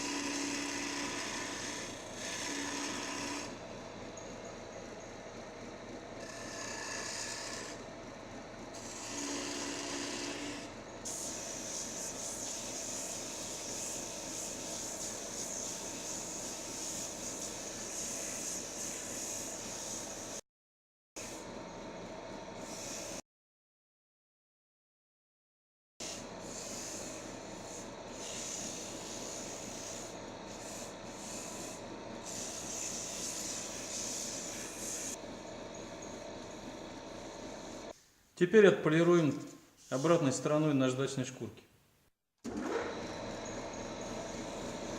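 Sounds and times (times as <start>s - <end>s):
tool scraping spinning wood: 0.0s - 3.6s, 6.2s - 7.9s, 8.7s - 20.4s, 26.0s - 38.0s, 42.5s - 44.9s
wood lathe running: 0.0s - 3.6s, 6.2s - 7.9s, 8.7s - 10.8s, 26.0s - 37.9s, 42.5s - 44.9s.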